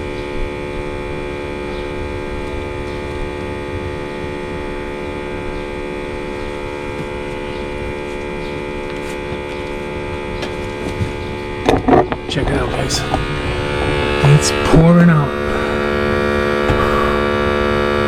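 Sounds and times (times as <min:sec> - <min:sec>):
small air pump humming: 0:12.3 - 0:18.0.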